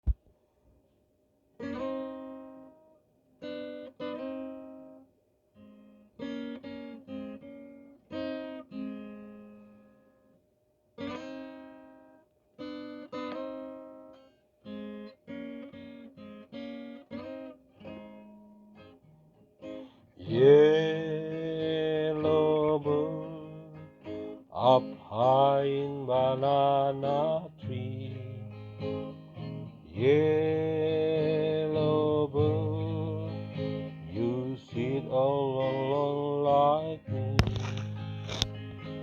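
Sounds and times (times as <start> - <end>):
acoustic guitar chords: 14.8 - 39.0.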